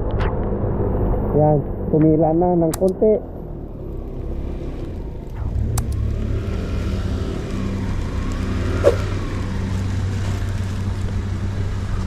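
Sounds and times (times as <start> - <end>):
scooter engine droning: 3.0 - 12.0.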